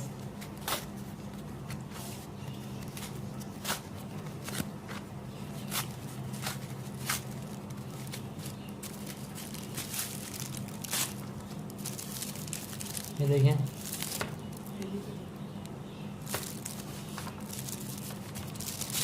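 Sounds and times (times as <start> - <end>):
packaging rustling: 5.6 - 14.8, 16.2 - 19.0.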